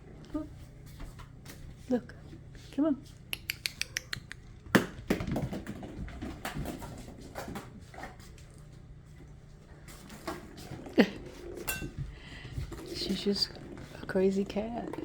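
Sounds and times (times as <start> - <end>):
ball knocking on floor: 4.7 - 6.8.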